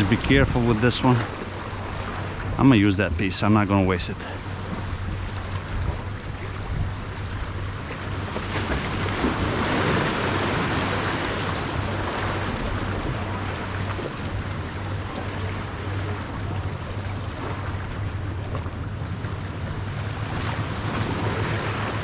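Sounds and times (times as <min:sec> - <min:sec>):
ocean waves washing ashore: 0:00.0 - 0:22.0
steady low hum: 0:00.0 - 0:22.0
wind on microphone: 0:04.6 - 0:15.2.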